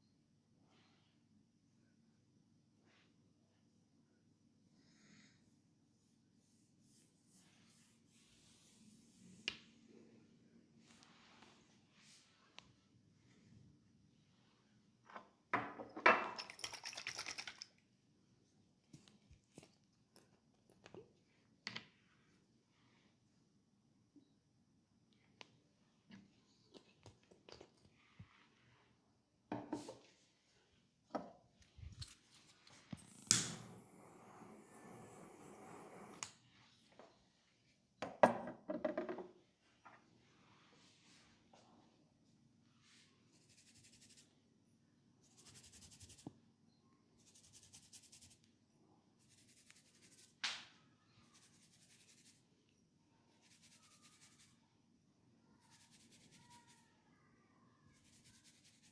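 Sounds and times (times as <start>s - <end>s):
click: 36.1s - 36.4s.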